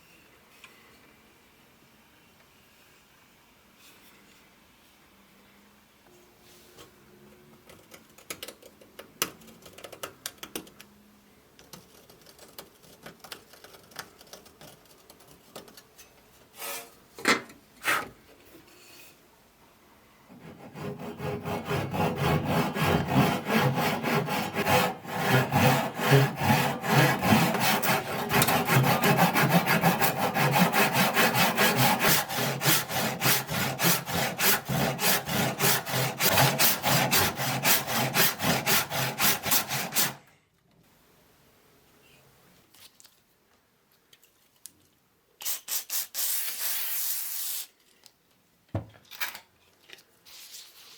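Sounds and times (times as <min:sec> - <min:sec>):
hand tool rasping wood: 0:20.3 - 0:40.2.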